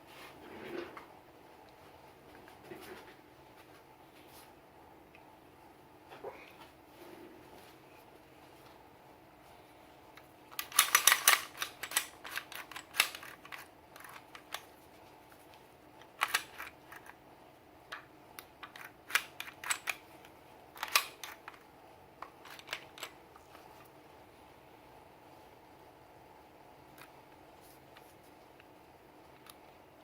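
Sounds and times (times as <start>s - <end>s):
pistol parts clicking and clacking: 10.5s - 14.7s, 16.0s - 17.2s, 18.4s - 21.6s, 22.2s - 23.2s.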